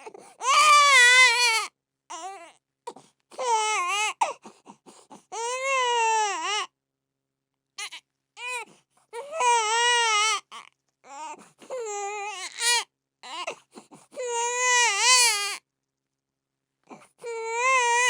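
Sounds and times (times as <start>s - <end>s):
baby crying: 0.4s - 2.6s, 3.4s - 4.3s, 5.3s - 6.7s, 7.8s - 13.6s, 14.2s - 15.6s, 17.2s - 18.0s.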